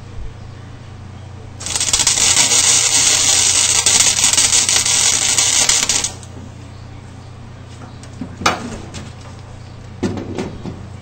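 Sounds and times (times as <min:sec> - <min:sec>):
welder crackling sizzle: 0:01.6 - 0:06.4.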